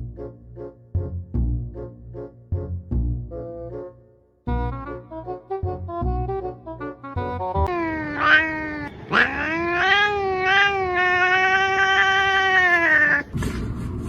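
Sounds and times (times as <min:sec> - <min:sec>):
cat yowling: 0:07.7 - 0:13.3.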